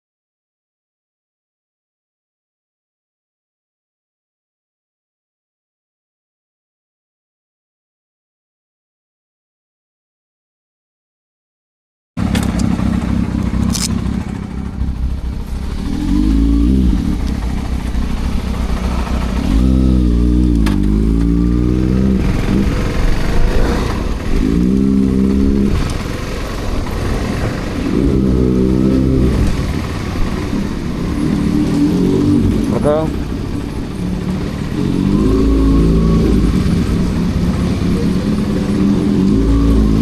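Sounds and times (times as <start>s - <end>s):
motorcycle engine revving: 12.2s - 40.0s.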